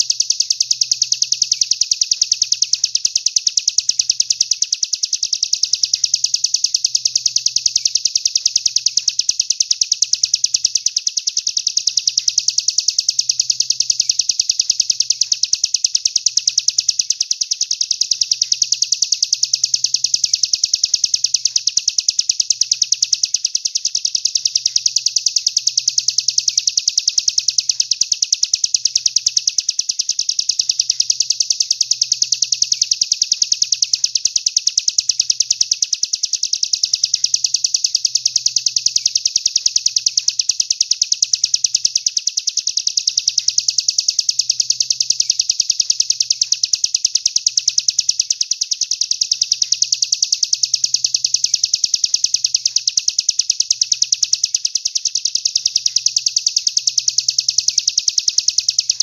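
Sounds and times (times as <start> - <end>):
songbird trilling: 0.0 - 15.5, 28.7 - 42.2.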